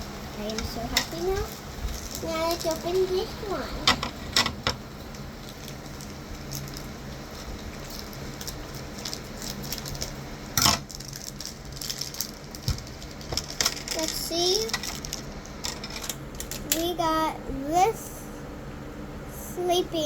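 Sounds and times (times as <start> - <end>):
loud sharp crinkle: 3.9 - 16.6.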